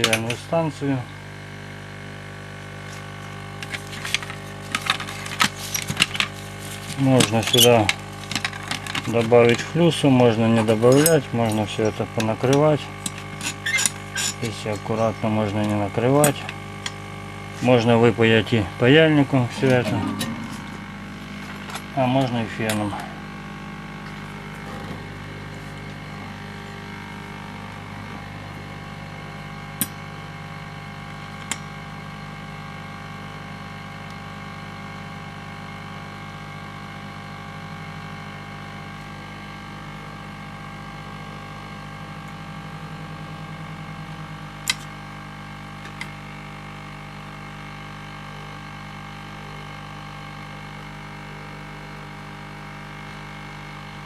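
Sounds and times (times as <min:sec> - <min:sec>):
blower fan humming: 0:00.0 - 0:32.6, 0:34.0 - 0:47.3.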